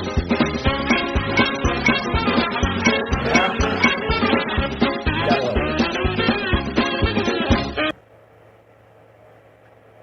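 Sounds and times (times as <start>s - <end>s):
upbeat music with bouncy beat: 0.0s - 7.9s.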